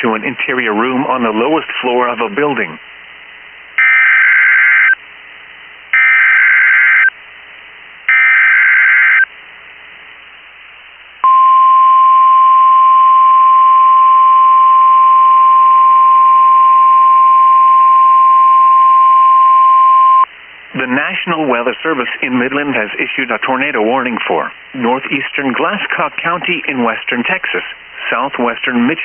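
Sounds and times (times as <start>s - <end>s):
steady warning alarm tone: 3.8s - 5.0s, 6.0s - 7.1s, 8.1s - 9.3s.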